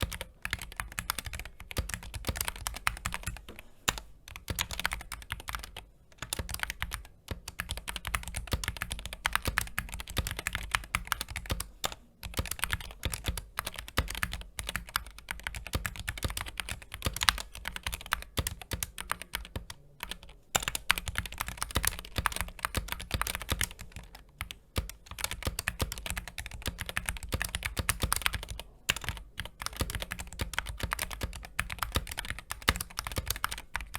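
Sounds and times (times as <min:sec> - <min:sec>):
fast typing on keyboard: 0:00.0 - 0:33.9.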